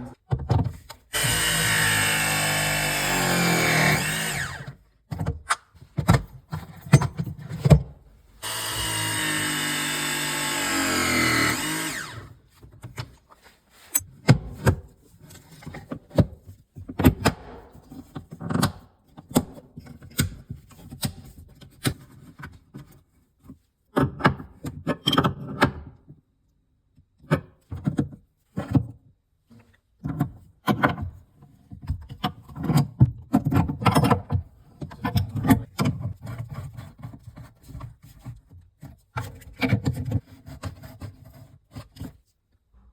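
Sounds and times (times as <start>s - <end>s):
press tool motor running: 1.1s - 4.8s, 8.4s - 12.3s.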